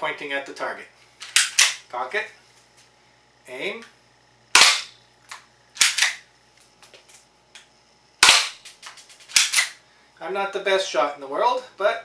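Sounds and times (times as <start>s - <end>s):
bb gun shots: 4.5s - 5.0s, 8.2s - 8.6s.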